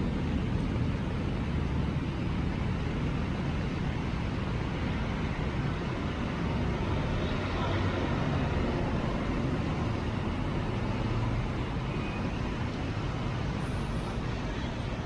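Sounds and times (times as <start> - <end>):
traffic on wet road: 0.0 - 15.0.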